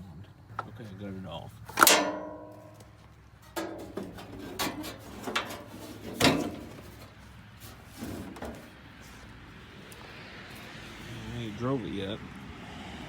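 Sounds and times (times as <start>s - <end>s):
knocks and clunks: 1.7s - 8.8s.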